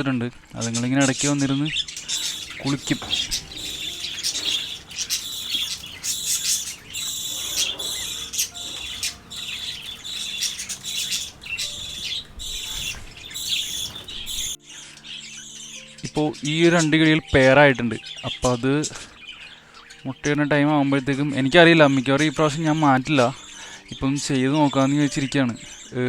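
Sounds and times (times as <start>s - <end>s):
parrots chirping and chattering: 1.4s - 15.8s.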